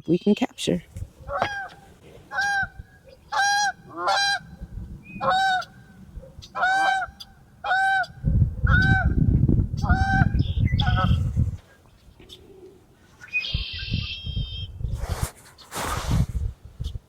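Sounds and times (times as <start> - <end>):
geese honking: 1.2 - 9.1, 9.8 - 11.2
low rumbling on microphone: 8.1 - 11.7.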